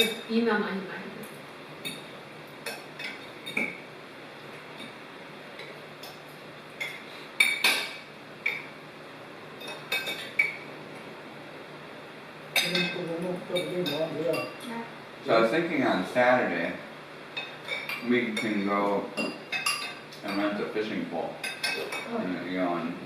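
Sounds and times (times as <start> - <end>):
faint background hum: 0.0 - 23.0
cutlery and dishes clinking: 9.6 - 11.1, 12.6 - 14.6, 17.4 - 18.6, 19.2 - 20.6, 21.4 - 22.1.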